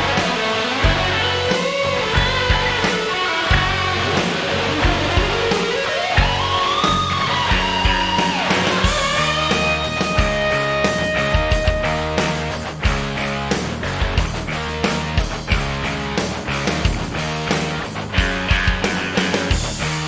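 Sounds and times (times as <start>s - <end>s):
rock music with guitar and drums: 0.0s - 20.0s.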